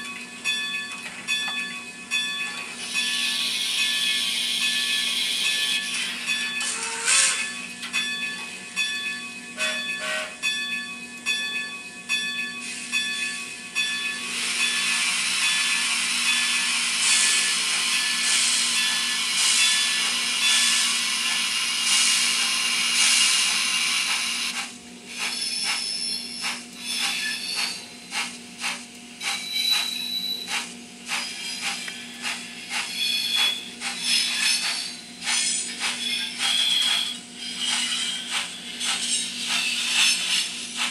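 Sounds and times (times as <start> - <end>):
continuous steam hiss: 2.8 - 7.4, 13.9 - 29.9
steam locomotive exhaust chuffs: 12.6 - 40.9.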